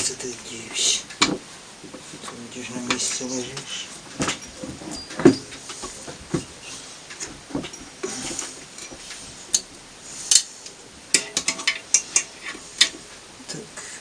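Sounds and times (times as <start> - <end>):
metal parts clicking and clinking: 10.3 - 13.0.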